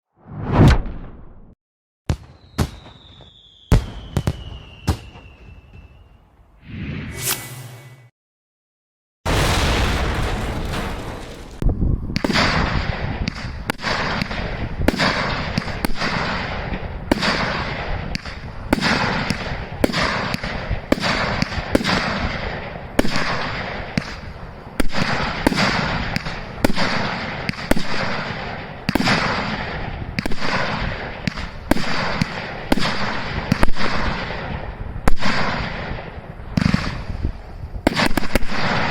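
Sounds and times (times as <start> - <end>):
firework barrage bangs: 2.1 - 6.2, 9.3 - 24.2.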